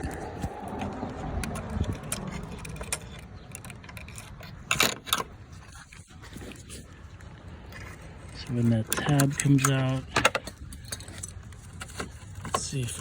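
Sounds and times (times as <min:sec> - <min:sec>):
metal latch clicking and rattling: 0:00.0 - 0:05.5, 0:08.6 - 0:13.0.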